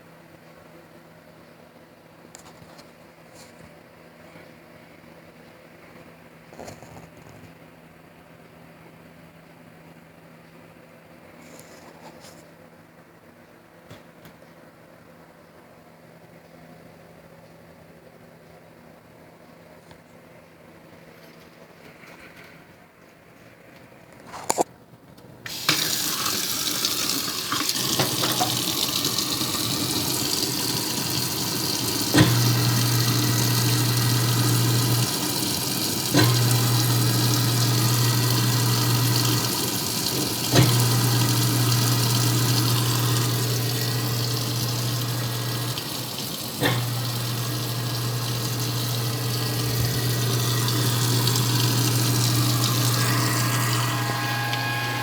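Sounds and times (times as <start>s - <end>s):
garbage disposal motor humming: 25.4s - 55.0s
tap water running into sink: 25.5s - 55.0s.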